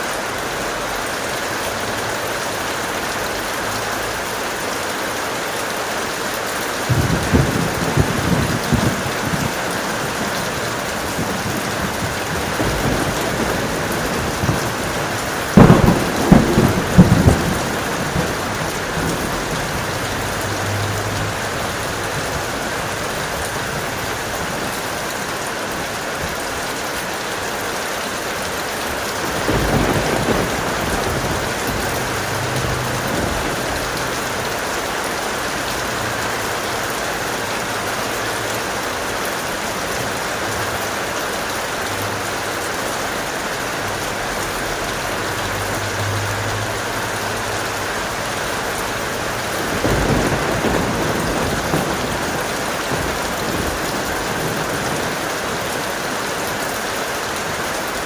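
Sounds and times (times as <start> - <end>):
heavy steady rain: 0.0 - 58.0
rolling thunder: 6.9 - 24.9, 29.2 - 34.9, 48.9 - 55.7.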